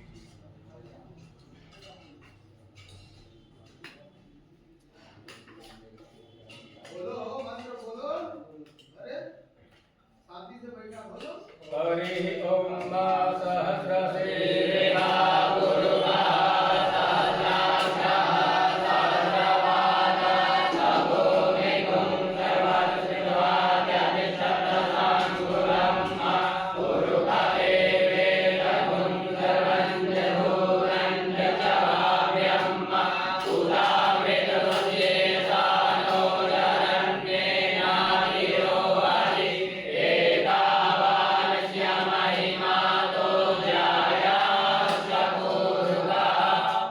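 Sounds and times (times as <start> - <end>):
group of voices chanting: 12.0 - 46.9.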